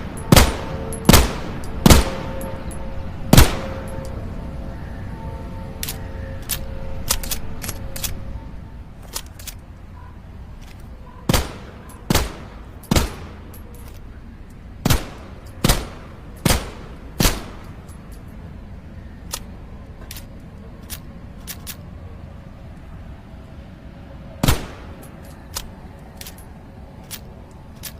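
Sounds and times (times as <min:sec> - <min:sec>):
pistol shots: 0:00.2 - 0:02.5, 0:03.3 - 0:03.8, 0:11.3 - 0:13.4, 0:14.8 - 0:17.7, 0:24.4 - 0:25.1.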